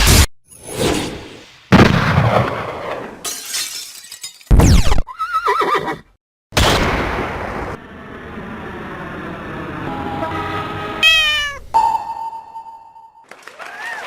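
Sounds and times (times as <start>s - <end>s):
horse whinny: 5.1s - 6.0s.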